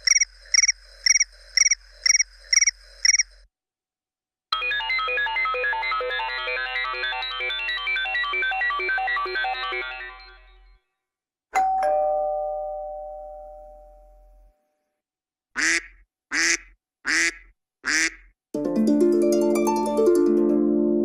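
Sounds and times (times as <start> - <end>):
fast electronic ringtone: 0.0 - 3.2, 4.6 - 10.6
short electronic tones: 0.0 - 3.3.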